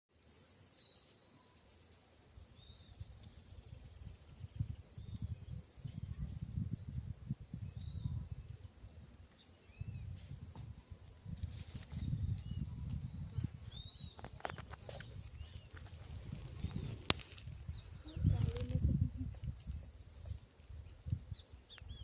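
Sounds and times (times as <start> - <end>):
bird chirps: 12.0 - 22.0
low rumbling: 15.0 - 20.2.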